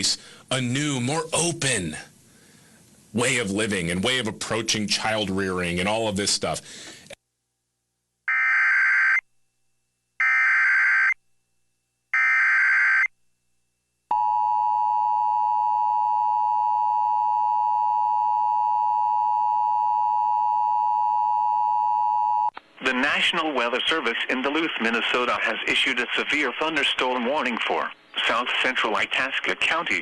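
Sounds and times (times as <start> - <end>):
long steady attention tone: 9.6 - 22.6.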